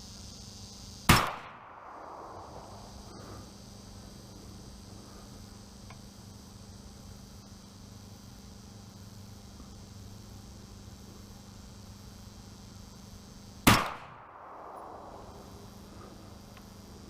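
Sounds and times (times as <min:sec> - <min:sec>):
crickets chirring: 0:00.0 - 0:17.0
rifle shot with echo: 0:01.1 - 0:02.9, 0:13.6 - 0:15.5.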